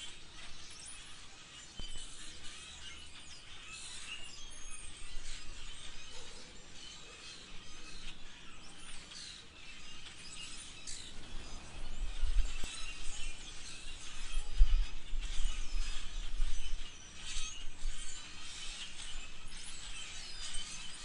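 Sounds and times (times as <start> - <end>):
budgerigar chirping and chattering: 0.4 - 11.6.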